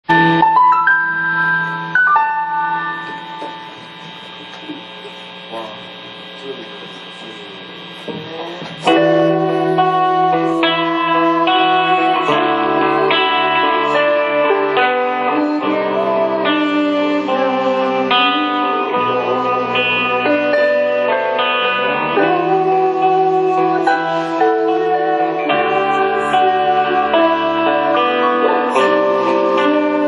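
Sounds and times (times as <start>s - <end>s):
electric keyboard chords: 0.0s - 30.0s
faint murmuring: 2.9s - 20.0s.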